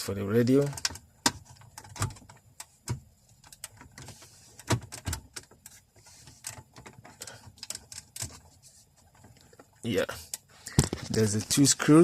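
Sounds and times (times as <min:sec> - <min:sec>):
plastic clicks and knocks: 0:10.3 - 0:11.3.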